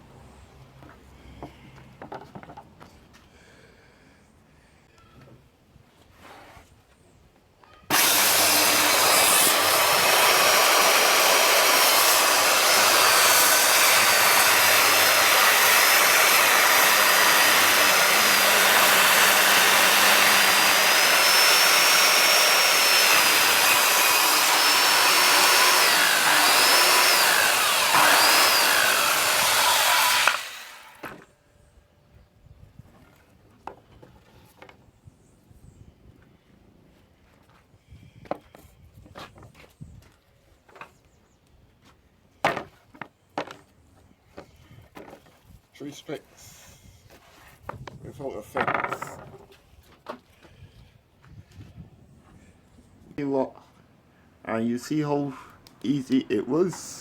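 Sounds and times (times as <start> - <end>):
circular saw cutting wood: 7.9 - 31.3.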